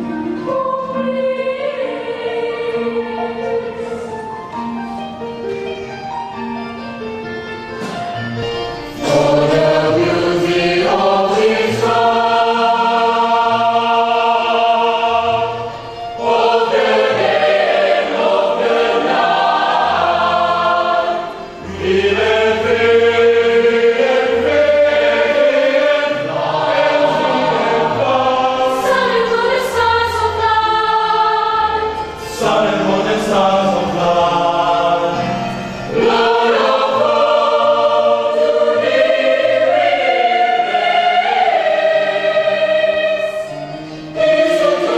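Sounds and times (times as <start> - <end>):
choir singing in harmony: 0.0 - 44.9
singers breathing: 43.6 - 44.2.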